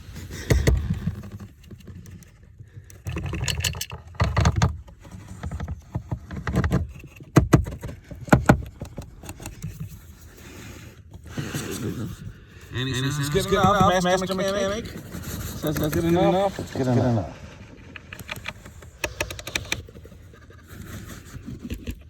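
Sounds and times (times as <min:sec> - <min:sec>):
plastic housing knocking and rattling: 0:00.3 - 0:10.0, 0:13.4 - 0:14.6, 0:17.8 - 0:20.4.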